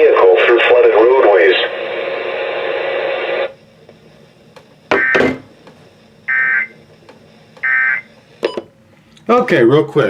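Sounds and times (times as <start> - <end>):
radio hiss: 0.0 - 4.3.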